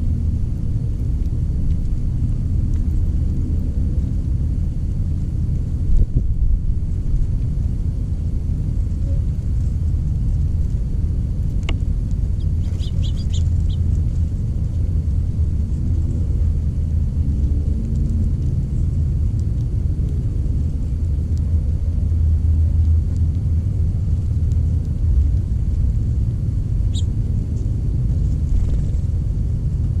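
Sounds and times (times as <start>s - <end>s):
steady low rumble: 0.0s - 30.0s
high bird chirps: 12.4s - 13.8s, 26.9s - 27.1s.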